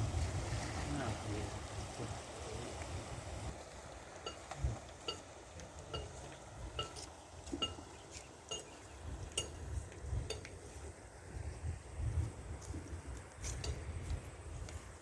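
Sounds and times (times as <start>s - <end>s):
ringing metallic clinks: 8.5s - 8.8s.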